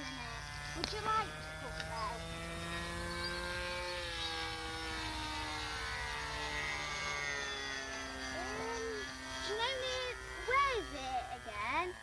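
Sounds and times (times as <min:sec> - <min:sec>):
model plane engine buzzing: 0:00.0 - 0:12.0.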